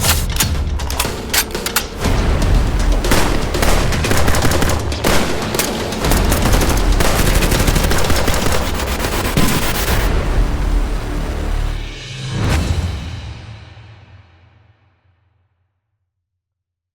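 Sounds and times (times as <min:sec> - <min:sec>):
rapid automatic gunfire: 0:03.1 - 0:10.1.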